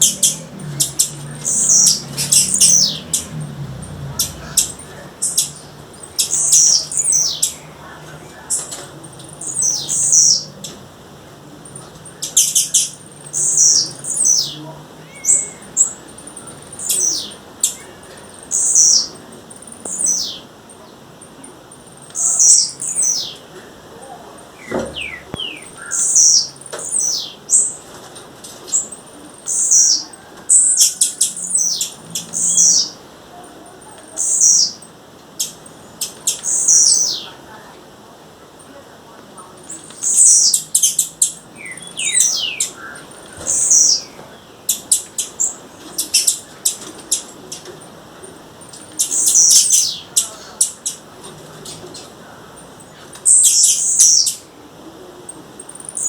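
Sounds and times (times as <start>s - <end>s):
bird calling high sharp notes: 0.0s - 3.4s, 4.0s - 7.8s, 24.5s - 27.8s, 39.7s - 46.4s.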